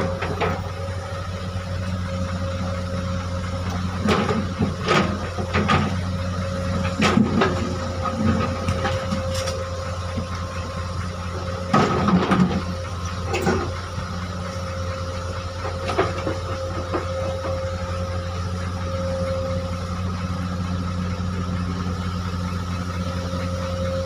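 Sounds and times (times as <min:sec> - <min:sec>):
excavator diesel engine running: 0:00.0 - 0:24.0
machine knocking and clanking: 0:06.8 - 0:10.3, 0:11.6 - 0:13.8, 0:15.6 - 0:17.6.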